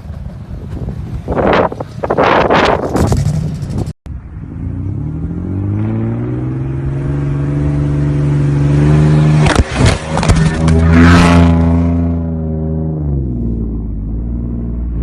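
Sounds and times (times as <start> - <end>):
wind noise on microphone: 0.0 - 4.4.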